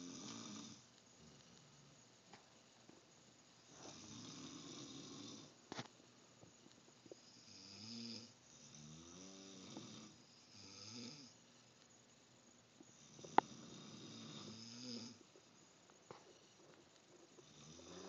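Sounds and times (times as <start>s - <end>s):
person snoring: 0.0s - 1.5s, 3.8s - 5.6s, 7.2s - 11.4s, 13.0s - 15.2s, 17.4s - 18.0s.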